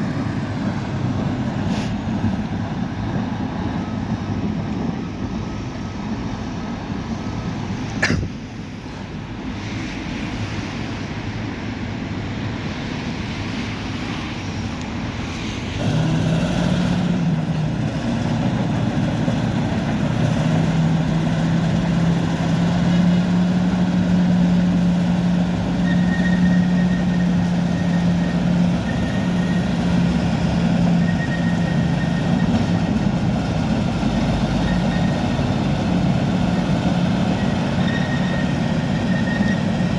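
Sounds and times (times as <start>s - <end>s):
bulldozer diesel engine running: 15.7s - 39.9s.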